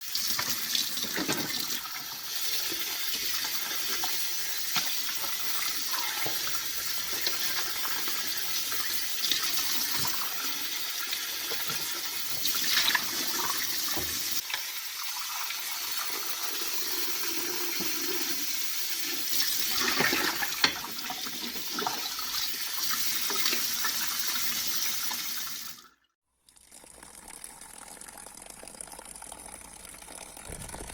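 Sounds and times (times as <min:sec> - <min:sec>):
water running and splashing: 0:00.0 - 0:14.8.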